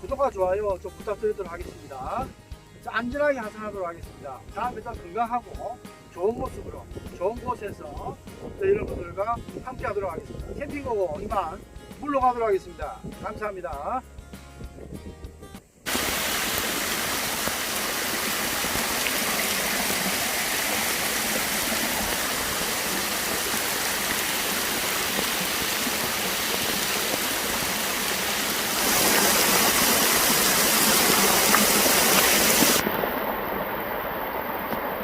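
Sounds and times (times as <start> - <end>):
rushing water: 15.9 - 35.0.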